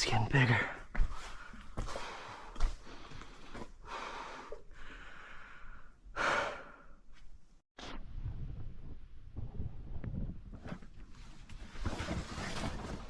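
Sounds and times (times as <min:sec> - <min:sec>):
person breathing hard: 0:01.1 - 0:07.1.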